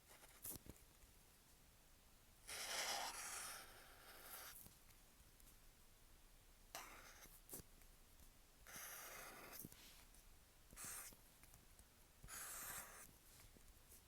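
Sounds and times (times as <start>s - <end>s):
marker scratching on paper: 2.5s - 4.6s, 6.8s - 7.5s, 8.7s - 9.7s, 10.8s - 11.2s, 12.2s - 13.1s.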